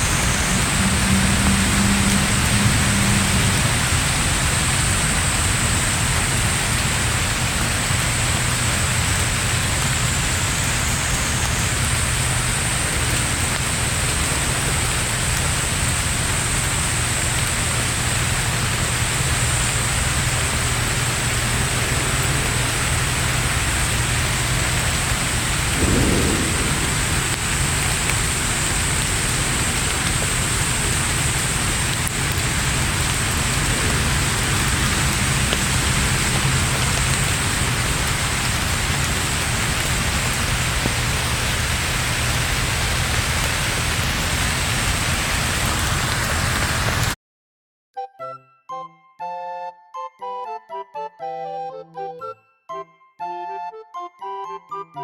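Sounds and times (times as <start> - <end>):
heavy rain falling: 0.0 - 47.2
low rumble: 25.4 - 39.4.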